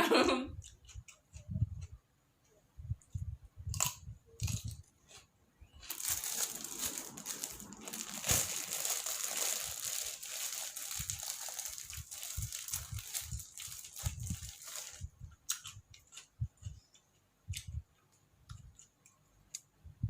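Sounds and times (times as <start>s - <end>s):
crinkling crunchy rustle: 4.4s - 16.3s.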